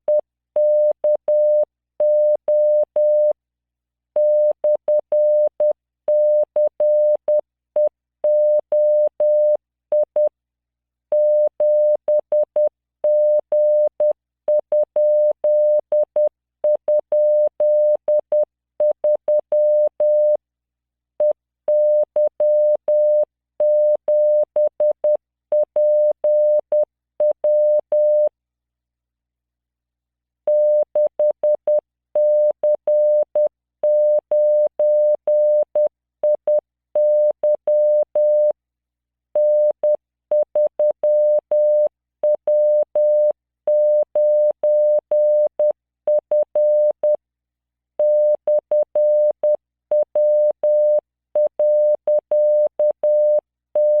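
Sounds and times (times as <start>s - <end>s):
morse code tone: 48.0s - 54.0s.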